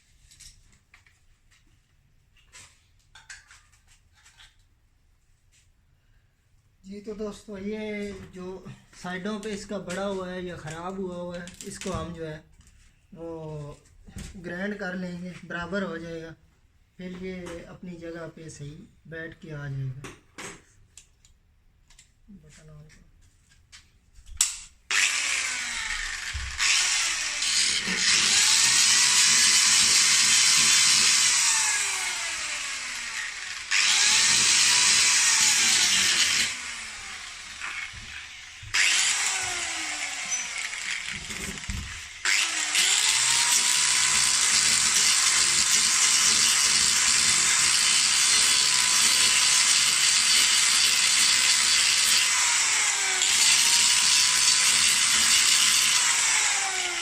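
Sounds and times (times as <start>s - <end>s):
power grinder grinding: 24.9s - 57.0s.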